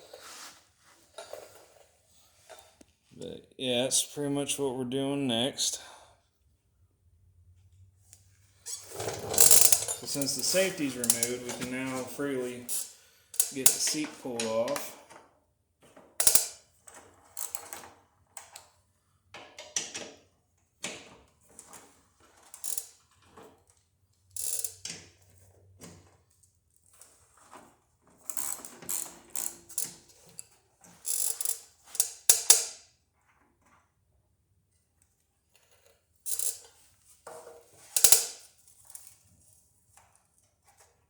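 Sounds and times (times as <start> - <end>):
metal parts clanking: 8.7 - 15.0.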